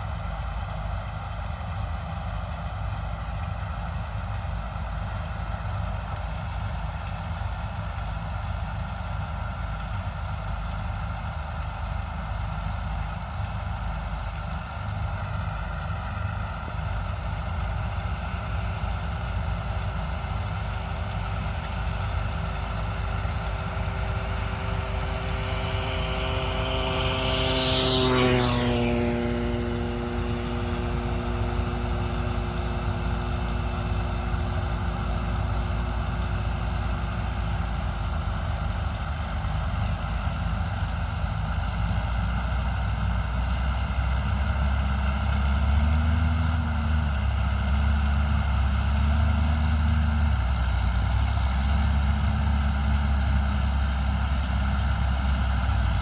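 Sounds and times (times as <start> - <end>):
farm machinery engines running: 0.0 - 56.0
harvest machine passing by: 15.4 - 56.0.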